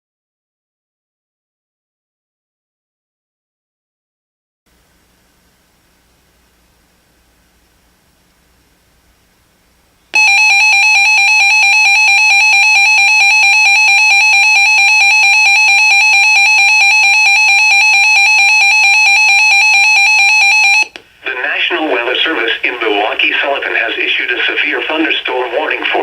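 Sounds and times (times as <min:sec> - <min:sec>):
weather radio alert tone: 0:10.2 - 0:21.9.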